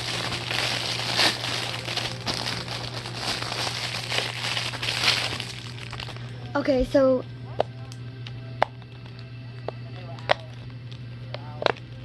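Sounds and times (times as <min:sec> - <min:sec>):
packaging crinkling: 0:00.0 - 0:06.4.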